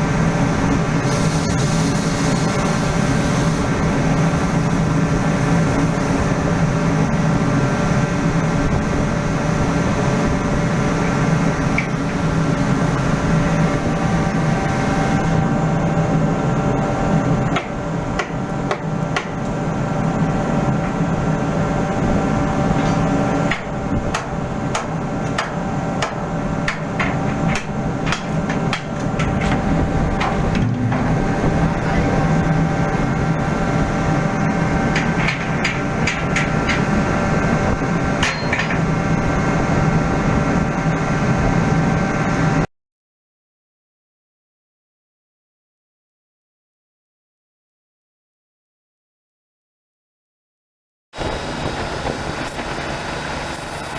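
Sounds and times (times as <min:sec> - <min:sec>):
machinery hum: 0:00.0 - 0:42.7, 0:51.2 - 0:53.9
hammer striking metal: 0:38.2 - 0:38.7.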